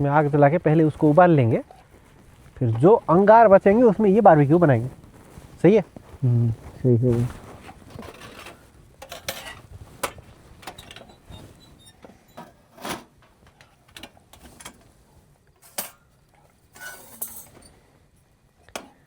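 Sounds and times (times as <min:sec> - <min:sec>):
metal camp stove parts clinking: 0:07.9 - 0:11.2, 0:11.8 - 0:14.9, 0:15.5 - 0:16.1, 0:16.7 - 0:17.8.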